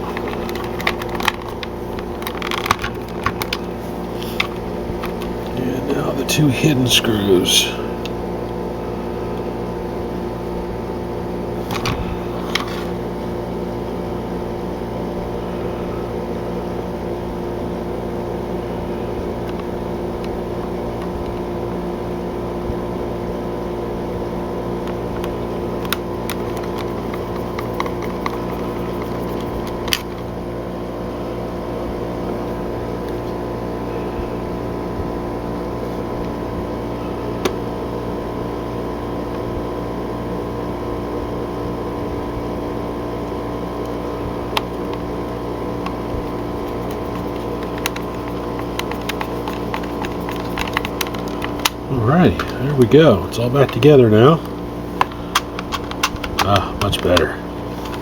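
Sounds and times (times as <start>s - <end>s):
screws clicking in plastic case: 0.0s - 5.4s, 25.8s - 30.2s, 46.6s - 51.8s, 55.0s - 57.2s
machine hum: 0.0s - 58.0s.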